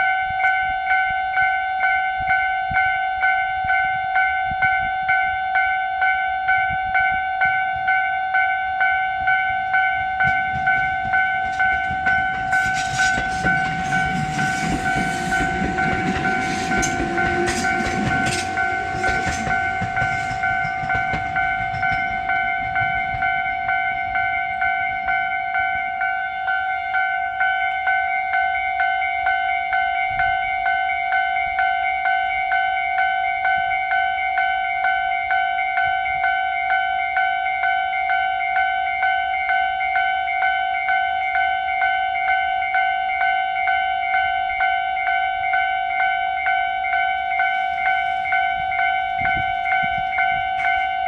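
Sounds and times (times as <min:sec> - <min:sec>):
railway crossing alarm dinging: 0:00.0 - 0:51.0
train rumbling past: 0:08.6 - 0:28.1, 0:47.0 - 0:51.0
wheels clicking over rail joints: 0:09.2 - 0:26.0, 0:47.1 - 0:51.0.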